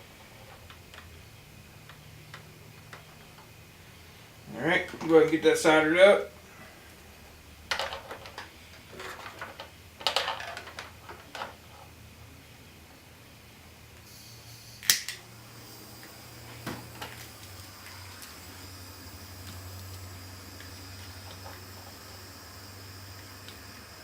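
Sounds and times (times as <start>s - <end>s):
tools and wires rattling: 7.7s - 11.9s
torch flame hissing: 14.0s - 24.0s.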